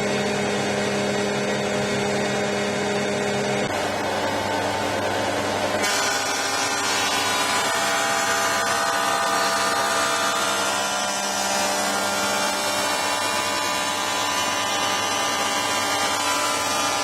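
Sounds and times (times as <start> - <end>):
planer thicknesser running: 0.0 - 17.0.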